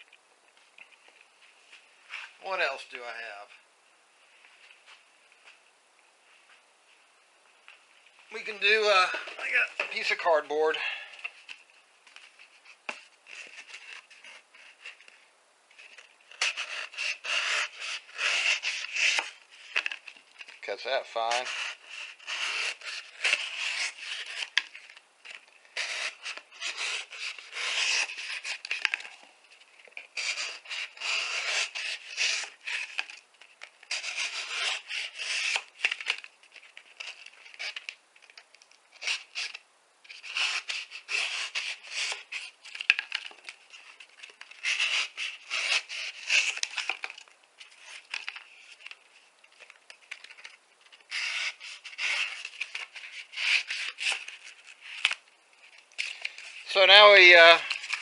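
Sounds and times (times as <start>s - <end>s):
knife blade shaving material: 16.3s - 19.8s, 21.2s - 24.6s, 25.8s - 29.0s, 30.2s - 33.1s, 33.9s - 36.1s, 40.2s - 42.6s, 44.4s - 46.9s, 51.1s - 55.2s.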